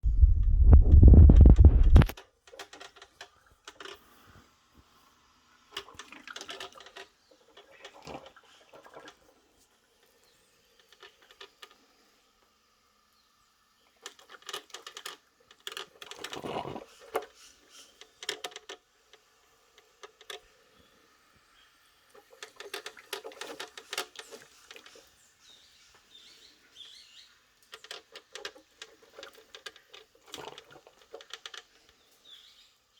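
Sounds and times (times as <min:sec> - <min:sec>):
coffee maker sputtering: 0:00.1 - 0:02.2
plastic parts clicking and rattling: 0:02.0 - 0:04.0, 0:05.8 - 0:08.4, 0:14.0 - 0:17.4, 0:18.0 - 0:20.5, 0:22.2 - 0:25.0, 0:27.7 - 0:32.0.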